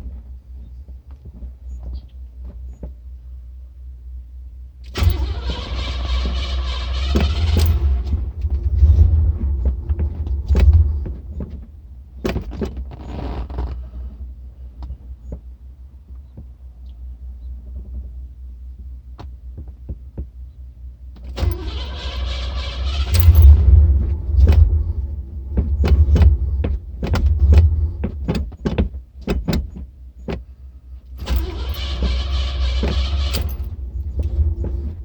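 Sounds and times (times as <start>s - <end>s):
low engine rumble: 0.0s - 35.0s
starter cranking engine: 4.9s - 11.0s, 21.2s - 28.3s, 31.2s - 35.0s.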